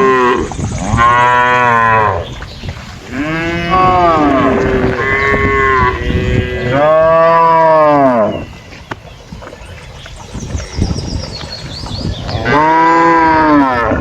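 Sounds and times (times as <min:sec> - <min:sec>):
cattle mooing: 0:00.0 - 0:02.2, 0:03.1 - 0:08.4, 0:12.3 - 0:14.0.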